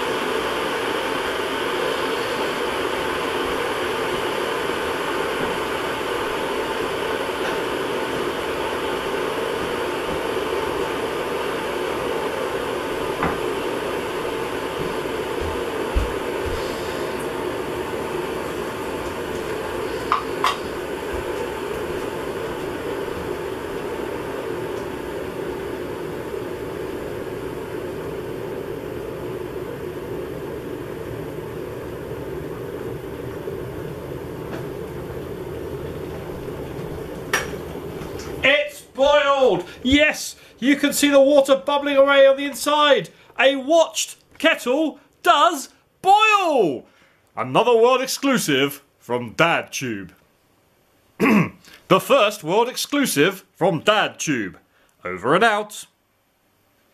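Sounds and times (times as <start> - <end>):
electric kettle heating water: 0.0 - 44.1.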